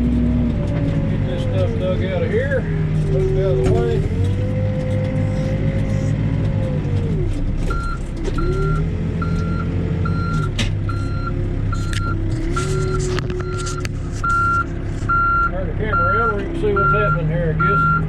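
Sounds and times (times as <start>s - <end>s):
diesel engine running under load: 0.0s - 18.0s
backup alarm beeping: 8.6s - 16.2s.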